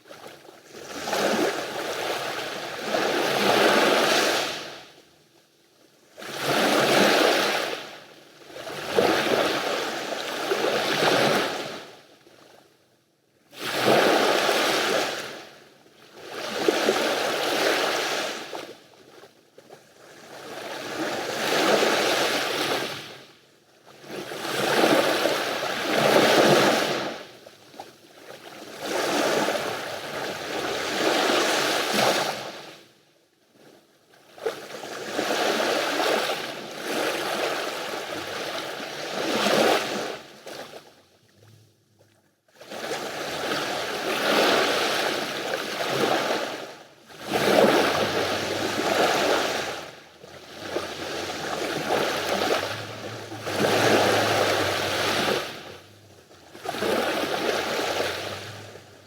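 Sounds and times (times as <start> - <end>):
sea waves washing onto shore: 42.7 - 59.0.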